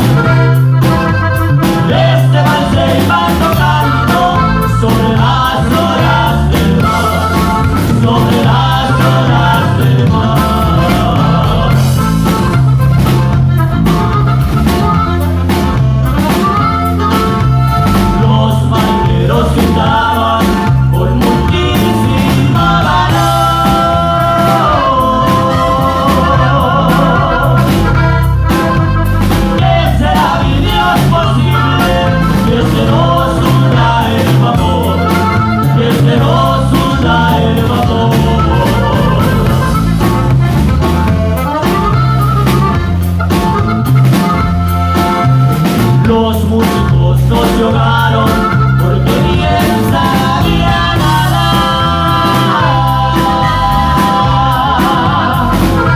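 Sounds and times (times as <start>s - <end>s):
person singing: 0.0s - 43.4s, 45.0s - 55.9s
bass and drum beat: 0.0s - 55.9s.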